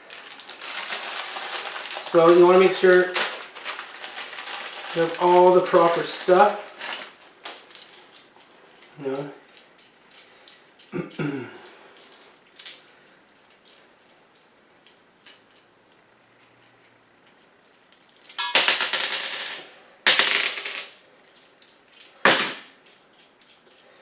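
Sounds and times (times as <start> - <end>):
loud jangling rattles: 0.3 - 8.3
metal hardware clinking: 0.3 - 18.8, 21.2 - 24.0.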